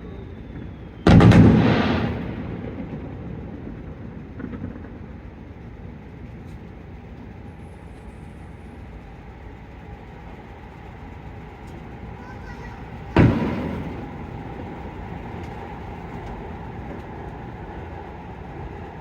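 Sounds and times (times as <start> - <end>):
firework burst echo: 0.0 - 5.2, 12.2 - 16.2
low outdoor rumble: 0.0 - 19.0.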